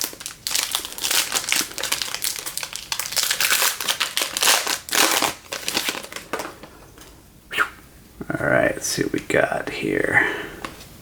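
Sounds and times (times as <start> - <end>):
foil wrapper crinkling: 0.0 - 6.8.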